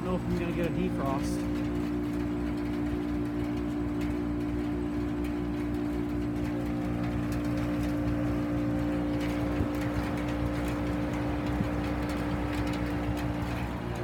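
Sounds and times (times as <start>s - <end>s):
heat pump humming: 0.0s - 14.0s.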